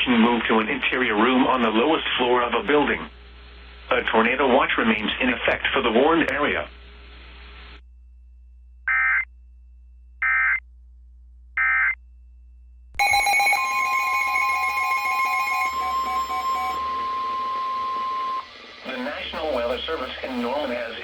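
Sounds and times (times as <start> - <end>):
faint hum: 0.0 - 21.0
steady alert attention tone: 13.0 - 20.8
digital data squawks: 13.0 - 21.0.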